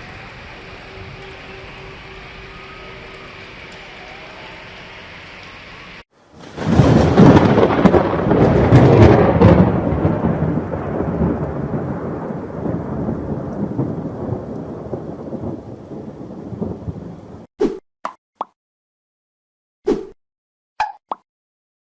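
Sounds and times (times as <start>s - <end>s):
rain falling: 0.0s - 17.5s
thunder crack and rumble: 6.3s - 17.5s.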